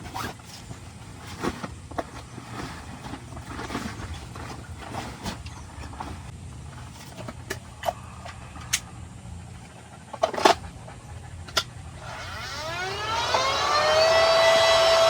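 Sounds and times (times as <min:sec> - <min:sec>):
low steady hum: 0:00.0 - 0:15.0
motor whining: 0:12.0 - 0:15.0.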